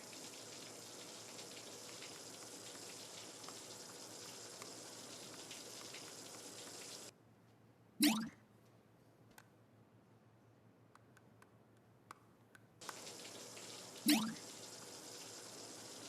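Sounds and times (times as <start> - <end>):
hissing noise with crackles: 0.0 - 7.1, 12.8 - 16.0.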